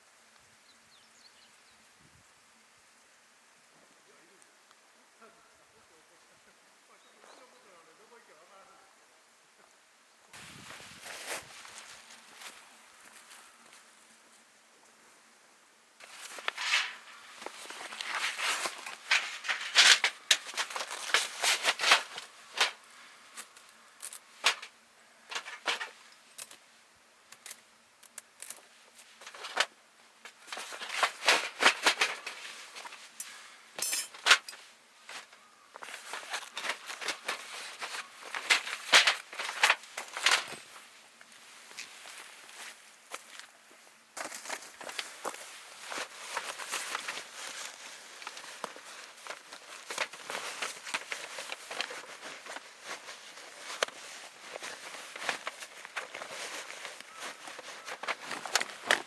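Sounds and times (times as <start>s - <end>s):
rustling and clatter: 16.0s - 26.6s, 27.3s - 43.5s, 44.2s - 59.0s.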